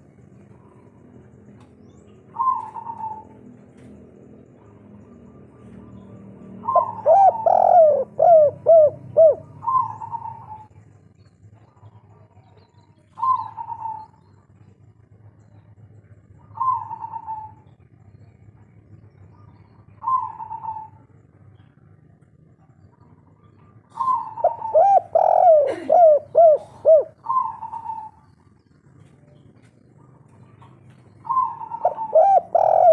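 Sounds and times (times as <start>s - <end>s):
dove cooing: 2.3s - 3.6s, 4.5s - 10.8s, 13.1s - 14.2s, 16.4s - 17.7s, 19.4s - 21.1s, 22.8s - 29.2s, 30.0s - 32.9s.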